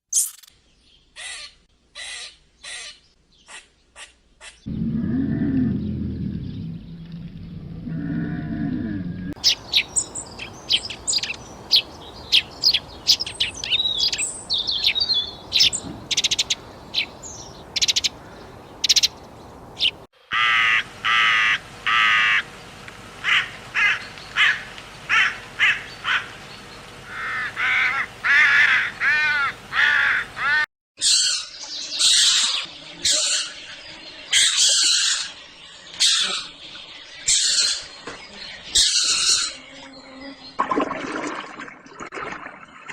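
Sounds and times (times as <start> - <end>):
bird chirps and clicks: 0.1 - 0.6, 9.4 - 20.0
harsh bird calls: 7.9 - 22.6, 23.2 - 40.6.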